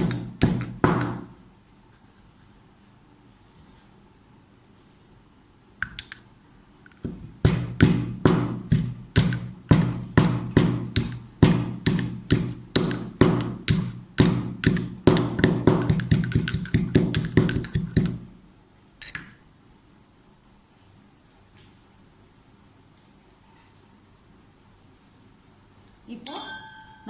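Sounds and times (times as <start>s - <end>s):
pestle pounding in a mortar: 0.0s - 1.4s, 7.1s - 18.3s.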